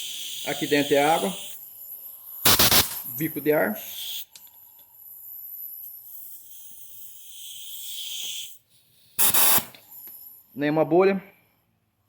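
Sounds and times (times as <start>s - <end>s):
air blow gun hissing: 0.0s - 4.4s, 5.2s - 10.3s
loud blast of air: 2.4s - 3.0s, 9.2s - 9.7s.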